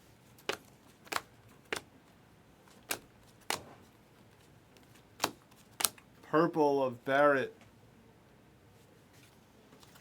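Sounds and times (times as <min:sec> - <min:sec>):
trading cards snapping: 0:00.4 - 0:01.9, 0:02.7 - 0:03.7, 0:04.8 - 0:06.0.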